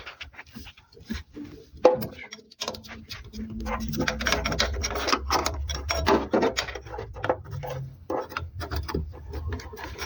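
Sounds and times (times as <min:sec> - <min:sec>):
wrench clicking and scraping on metal: 0:02.6 - 0:07.5.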